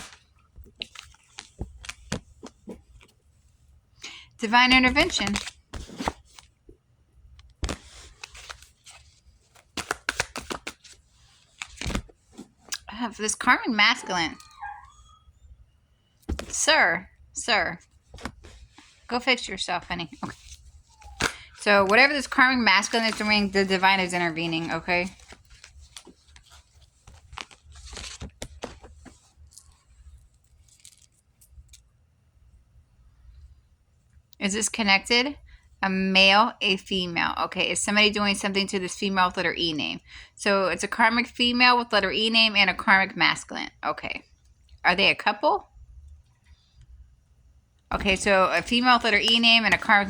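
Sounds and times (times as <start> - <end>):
cards being shuffled: 0.0 - 3.1, 4.9 - 6.5, 7.5 - 12.9, 16.3 - 16.6, 18.0 - 19.1, 19.9 - 31.8, 47.9 - 50.0.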